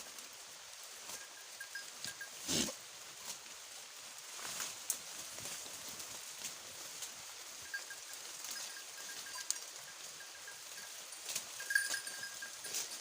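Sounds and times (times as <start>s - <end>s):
steady hiss: 0.0s - 13.0s
goats feeding clicks and rustles: 3.1s - 13.0s.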